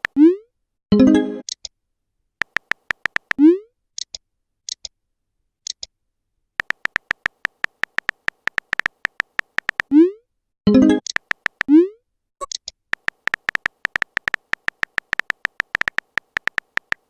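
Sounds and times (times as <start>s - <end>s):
keyboard typing clicks: 0.0s - 0.2s, 2.4s - 3.4s, 6.6s - 9.9s, 10.8s - 11.8s, 12.4s - 17.0s
small high blips: 0.0s - 0.4s, 2.4s - 3.6s, 6.6s - 10.2s, 11.0s - 11.9s, 13.0s - 17.0s.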